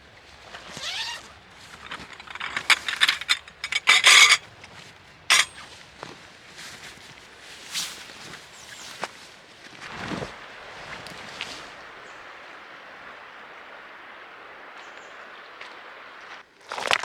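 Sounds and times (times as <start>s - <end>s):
hard objects clattering: 1.8s - 4.7s, 5.3s - 5.6s
hard objects clicking and knocking: 1.9s - 4.7s, 5.3s - 5.5s.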